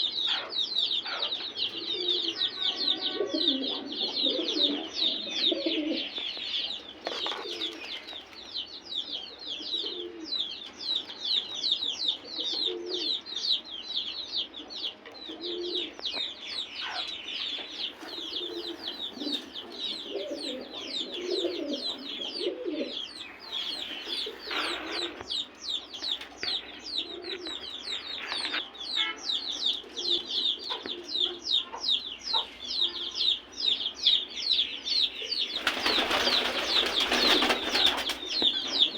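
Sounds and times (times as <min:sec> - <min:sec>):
birds chirping rapidly: 0:00.0 - 0:38.9
pigeons cooing: 0:01.1 - 0:08.4, 0:09.5 - 0:10.6, 0:12.3 - 0:13.3, 0:14.8 - 0:16.0, 0:16.8 - 0:28.6, 0:29.7 - 0:33.0, 0:35.0 - 0:38.9.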